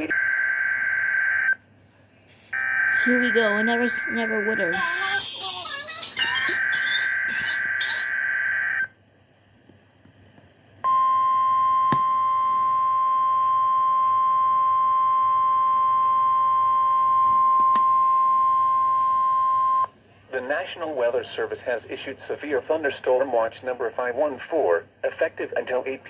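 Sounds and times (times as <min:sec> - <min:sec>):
loud single-pitch alarm tone: 0:02.6 - 0:04.8, 0:06.4 - 0:08.9, 0:10.9 - 0:19.9
warbling digital data bursts: 0:04.8 - 0:08.4.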